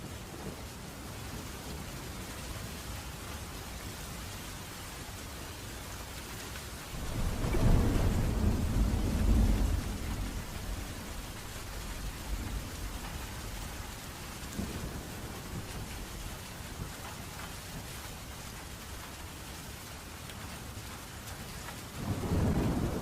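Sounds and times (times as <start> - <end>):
steady rain: 0.0 - 23.0
thunder rumble: 6.9 - 19.1, 21.9 - 23.0.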